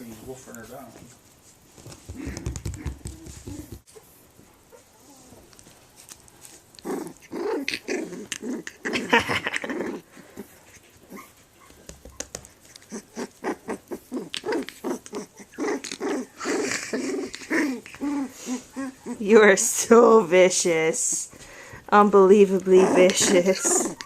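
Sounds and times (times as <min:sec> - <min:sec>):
puppy growling and yipping: 0:06.8 - 0:19.5, 0:22.6 - 0:24.0.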